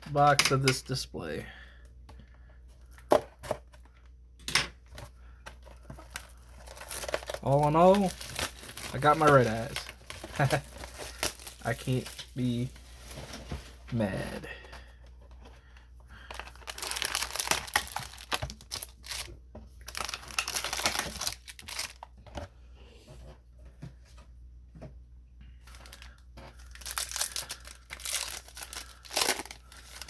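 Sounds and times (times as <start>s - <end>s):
packaging handling: 5.5s - 13.9s, 14.7s - 22.2s, 25.7s - 30.0s
foil and plastic crinkling: 5.6s - 15.0s, 15.6s - 22.2s, 25.7s - 30.0s.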